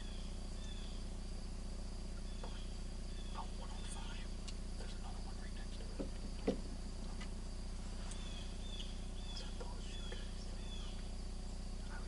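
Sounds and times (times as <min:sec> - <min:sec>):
crickets trilling: 0:00.0 - 0:12.0
falling bird chirps: 0:02.1 - 0:05.0, 0:07.8 - 0:12.0.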